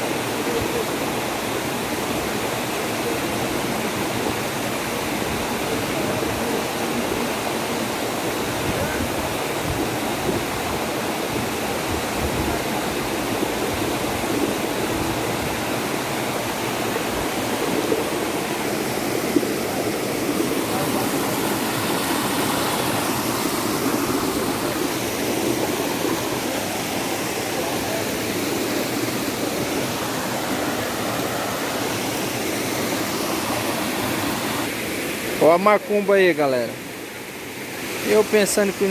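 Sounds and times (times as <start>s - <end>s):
waterfall roaring: 0.0s - 38.9s.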